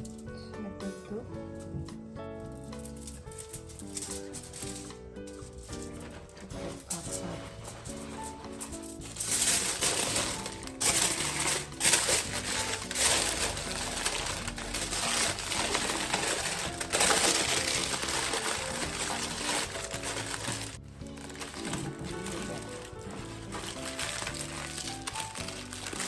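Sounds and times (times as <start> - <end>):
background music: 0.0 - 26.0
aluminium foil crinkling: 2.5 - 26.0.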